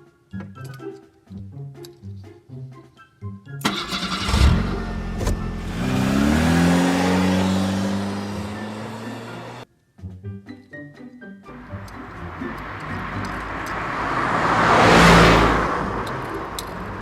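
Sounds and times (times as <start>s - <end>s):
light plucked music: 0.0s - 5.8s, 8.1s - 14.4s
car engine revving: 3.7s - 9.6s, 11.6s - 17.0s.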